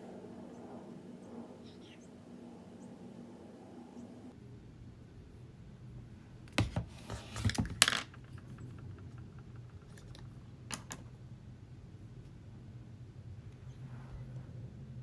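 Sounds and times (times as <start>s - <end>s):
low steady hum: 0.0s - 15.0s
makeup items clicking and clattering: 6.6s - 11.1s.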